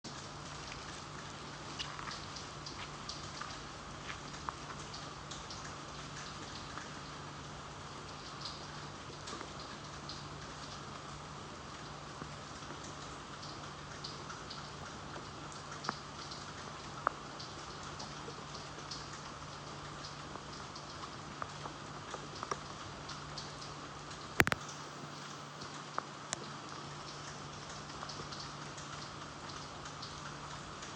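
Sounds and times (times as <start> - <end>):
gentle rain falling: 0.0 - 30.9
low steady hum: 0.1 - 30.9
raindrops tapping: 0.1 - 30.9.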